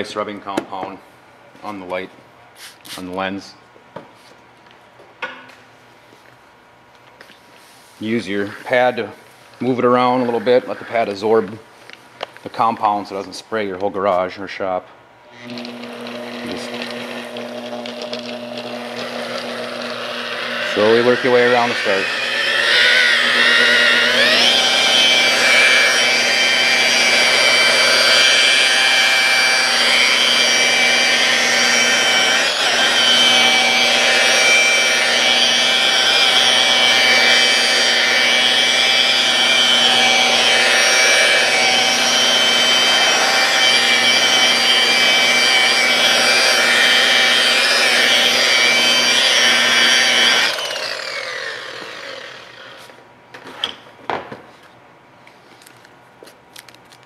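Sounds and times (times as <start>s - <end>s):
buffer motor whining: 15.3s - 52.8s.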